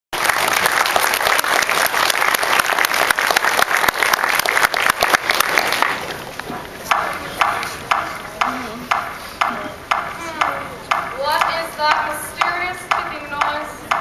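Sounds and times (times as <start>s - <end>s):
audience applauding: 0.2s - 6.4s.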